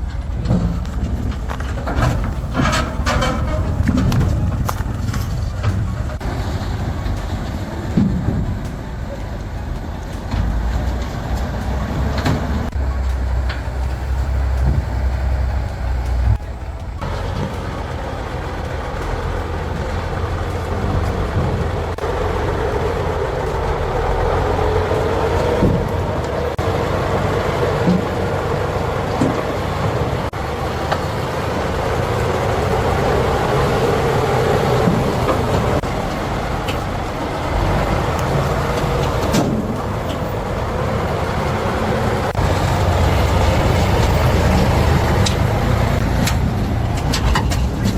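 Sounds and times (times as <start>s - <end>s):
truck engine running: 2.0s - 47.9s
steady hum: 2.1s - 7.4s, 12.7s - 20.6s.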